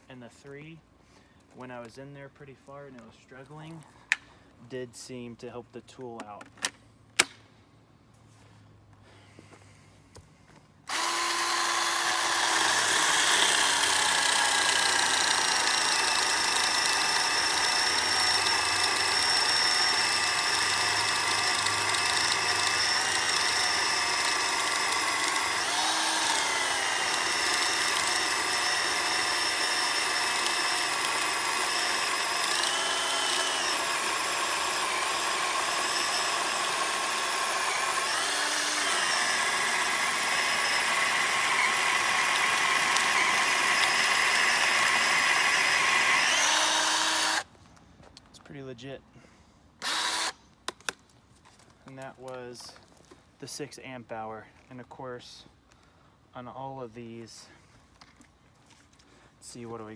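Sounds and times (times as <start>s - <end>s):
cordless chainsaw cutting wood: 10.9s - 47.5s, 49.8s - 50.4s.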